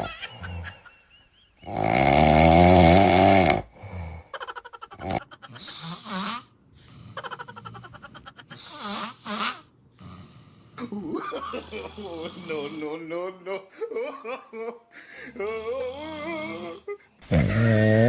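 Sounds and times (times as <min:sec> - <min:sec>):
loud snoring: 0:01.6 - 0:04.3, 0:08.6 - 0:13.0, 0:15.3 - 0:18.0
snorts: 0:08.5 - 0:11.0, 0:15.6 - 0:18.0.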